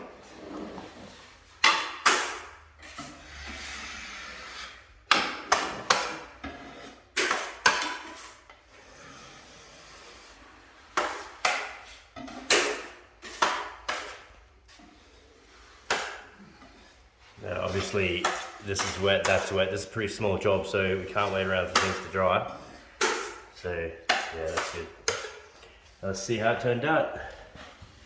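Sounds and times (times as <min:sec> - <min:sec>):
drywall knife scraping compound: 0:00.0 - 0:28.0
soft steady rubbing: 0:14.3 - 0:26.2.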